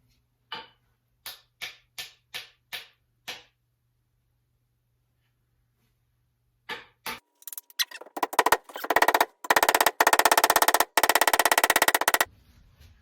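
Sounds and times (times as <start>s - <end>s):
drum roll: 7.9s - 12.3s.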